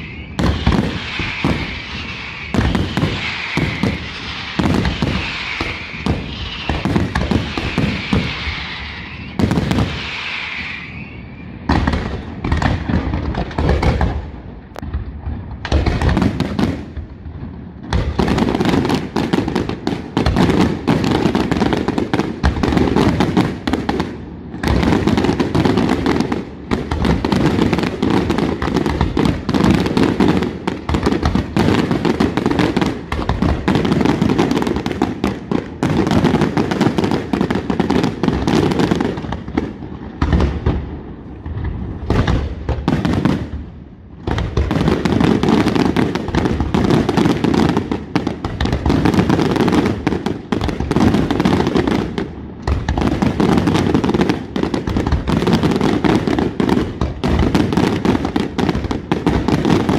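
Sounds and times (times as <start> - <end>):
fireworks booming and crackling: 0.0 - 59.9.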